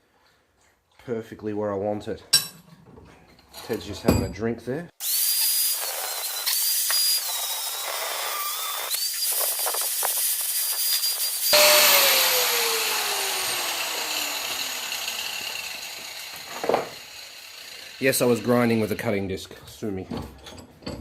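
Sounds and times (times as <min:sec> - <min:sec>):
angle grinder cutting metal: 0:05.0 - 0:19.2.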